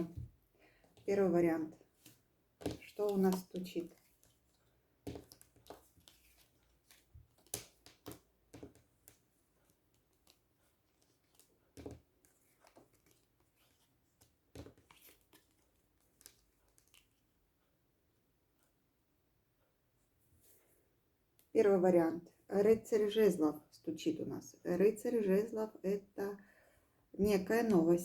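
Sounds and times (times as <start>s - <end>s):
cards clicking and rustling: 2.0s - 17.2s.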